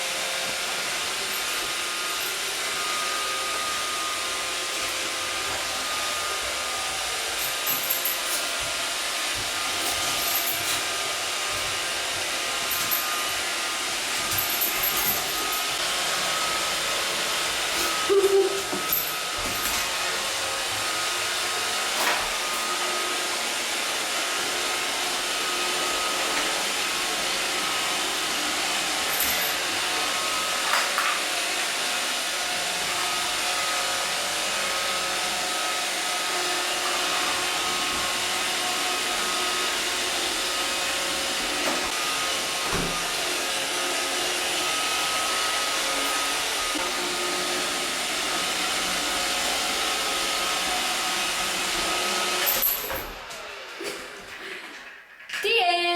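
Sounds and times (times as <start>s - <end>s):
robot vacuum whirring: 0.8s - 33.4s.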